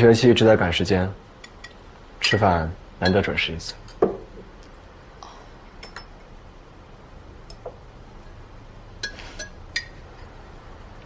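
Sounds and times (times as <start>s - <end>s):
low steady hum: 0.0s - 11.0s
dishes and cutlery clinking: 5.8s - 6.3s, 9.0s - 10.4s.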